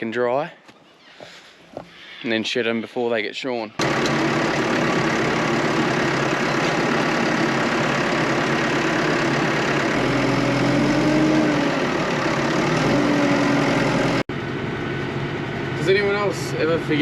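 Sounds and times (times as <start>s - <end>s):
vehicle engine running: 3.8s - 17.0s.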